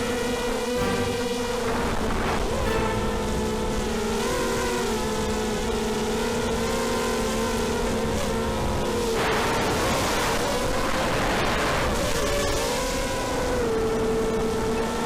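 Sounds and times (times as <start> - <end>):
quadcopter motors whining: 0.0 - 15.0
loud rushing noise: 0.8 - 5.5.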